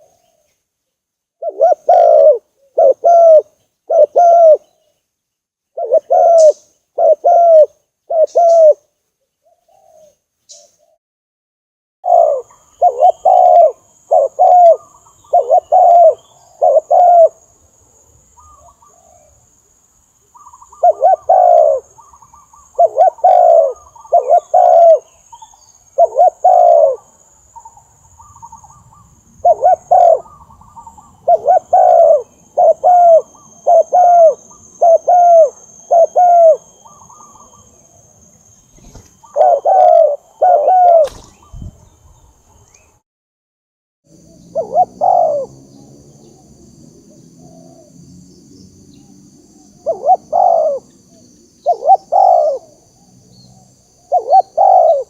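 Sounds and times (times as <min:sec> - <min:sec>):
dove cooing: 0:01.4 - 0:04.8, 0:05.8 - 0:10.2, 0:12.0 - 0:17.4, 0:20.4 - 0:27.2, 0:28.2 - 0:37.9, 0:38.7 - 0:41.8, 0:44.2 - 0:46.5, 0:47.3 - 0:48.0, 0:49.0 - 0:55.0.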